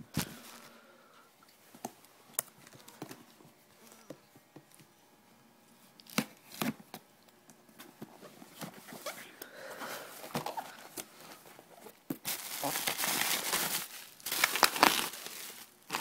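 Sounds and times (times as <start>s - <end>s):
cardboard rustling and tearing: 12.2s - 16.0s.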